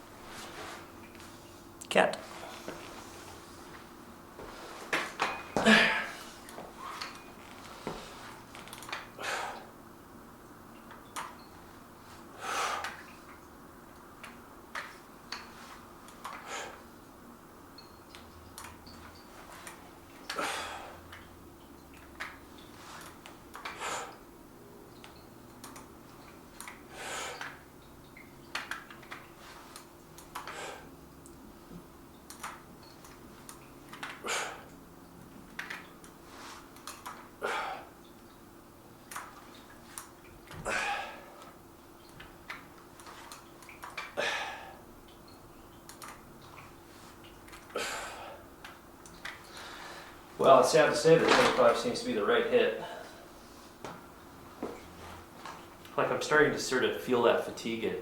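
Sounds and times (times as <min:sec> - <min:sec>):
faint steady hum: 0:00.0 - 0:58.0
noisy breath puffs: 0:26.9 - 0:27.5.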